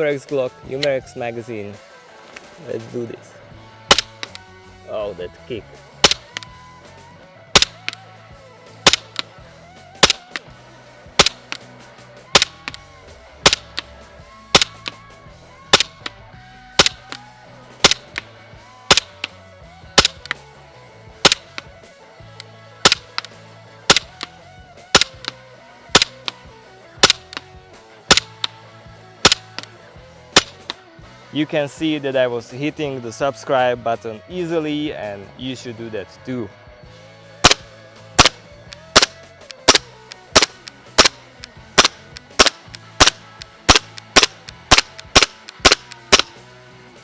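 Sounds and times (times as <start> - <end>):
airsoft pistol shots: 3.9 - 4.4, 6.0 - 6.5, 7.6 - 8.0, 8.9 - 9.3, 10.0 - 10.4, 11.2 - 11.6, 12.4 - 12.8, 13.4 - 13.8, 14.5 - 15.0, 15.7 - 16.1, 16.8 - 17.2, 17.8 - 18.3, 18.9 - 19.3, 20.0 - 20.4, 21.2 - 21.7, 22.8 - 23.3, 23.9 - 24.3, 25.0 - 25.4, 26.0 - 26.4, 27.0 - 27.4, 28.1 - 28.5, 29.2 - 29.7, 30.4 - 30.8, 37.4 - 41.2, 41.8 - 46.4.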